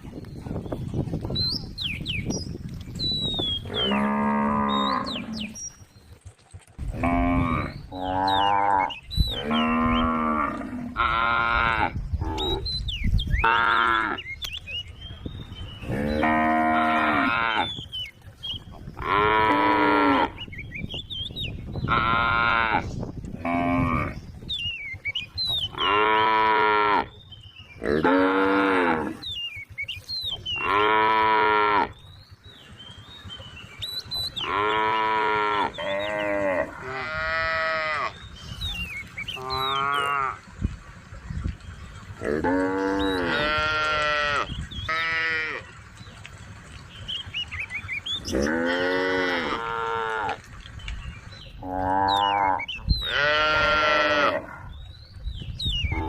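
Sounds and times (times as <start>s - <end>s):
cattle mooing: 3.6s - 5.6s, 6.9s - 12.7s, 15.8s - 17.7s, 19.0s - 20.4s, 27.8s - 29.2s, 30.6s - 32.0s, 34.4s - 38.3s, 39.4s - 40.5s, 42.2s - 45.7s, 48.2s - 50.4s, 51.6s - 54.6s.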